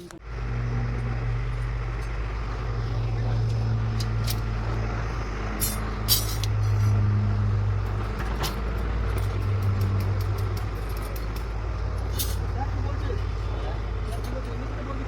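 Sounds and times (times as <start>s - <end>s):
machine engine running: 0.0s - 15.0s
metallic clicks and knocks: 8.0s - 12.4s.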